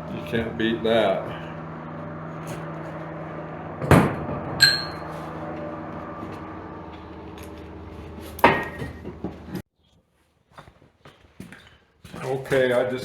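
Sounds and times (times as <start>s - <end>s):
low hum: 0.0s - 9.6s
brief ringing tone: 4.6s - 5.1s.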